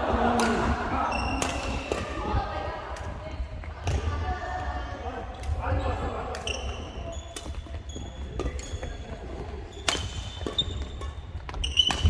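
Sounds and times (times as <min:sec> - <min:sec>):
racket striking shuttlecock: 0:00.4 - 0:00.8, 0:01.4 - 0:02.2, 0:09.8 - 0:12.0
shoes squeaking on floor: 0:06.4 - 0:12.0.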